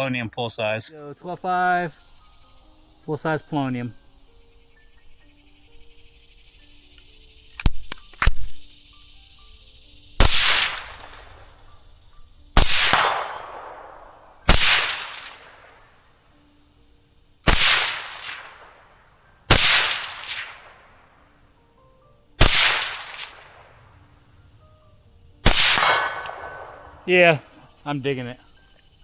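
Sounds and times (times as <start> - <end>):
suppressed rifle shots: 10.2 - 11.4, 12.6 - 15.8, 17.5 - 18.8, 19.5 - 20.9, 22.4 - 23.7, 25.4 - 27.0.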